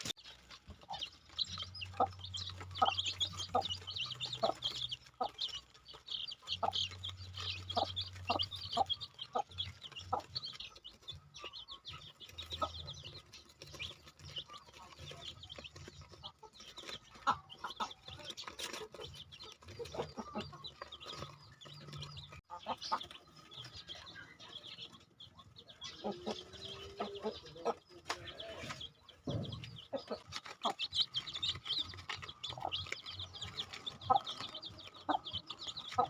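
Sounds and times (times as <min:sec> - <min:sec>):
chickens clucking and chirping: 0:00.0 - 0:36.0.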